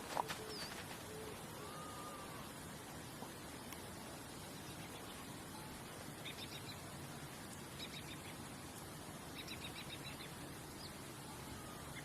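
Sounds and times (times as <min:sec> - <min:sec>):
steady background hiss: 0:00.0 - 0:12.0
bird chirping: 0:04.5 - 0:06.9, 0:07.7 - 0:08.5, 0:09.3 - 0:12.0.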